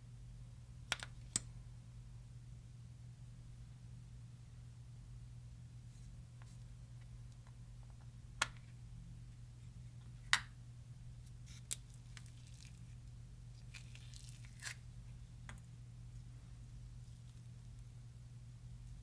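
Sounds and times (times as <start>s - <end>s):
steady low hum: 0.0s - 19.0s
sticky slime crackles: 11.4s - 14.8s.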